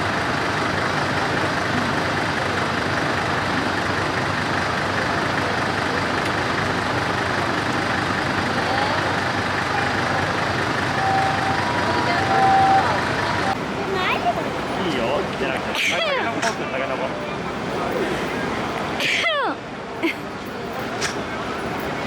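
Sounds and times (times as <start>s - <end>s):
truck engine idling: 0.0s - 19.0s.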